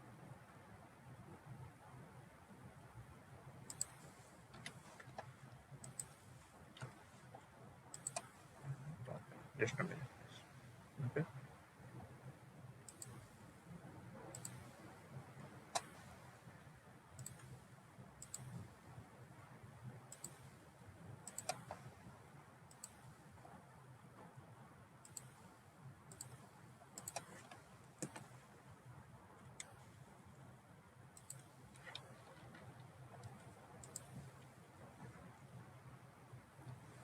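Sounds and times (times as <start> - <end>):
faint low hum: 0.0 - 37.0
computer mouse clicking: 3.6 - 7.3, 7.9 - 8.7, 12.8 - 13.6, 14.2 - 16.4, 17.2 - 17.6, 18.2 - 18.9, 20.1 - 20.6, 21.2 - 22.0, 22.7 - 23.6, 25.0 - 28.6, 29.4 - 30.0, 31.1 - 35.6, 36.3 - 37.0.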